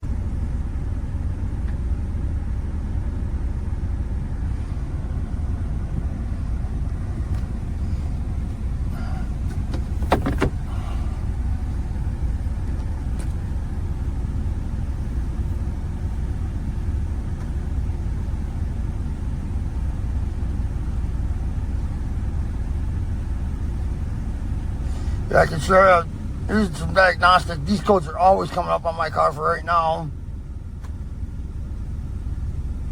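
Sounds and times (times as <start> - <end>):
car cabin rumble: 0.0 - 32.9.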